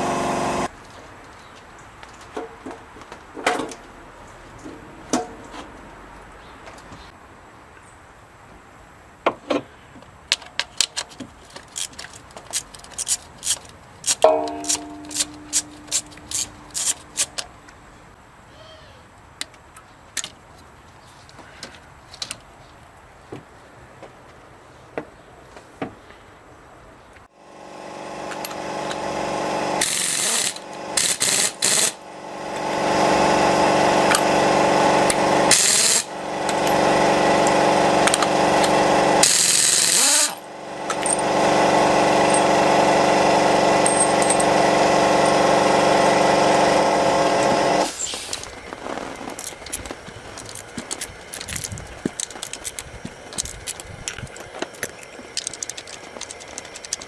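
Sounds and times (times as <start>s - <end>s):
power tool spinning up: 0.0s - 0.7s, 14.1s - 17.4s, 27.4s - 57.0s
metal parts clicking and rattling: 10.3s - 17.6s, 35.5s - 41.4s, 42.1s - 42.7s, 43.6s - 45.6s, 47.8s - 57.0s.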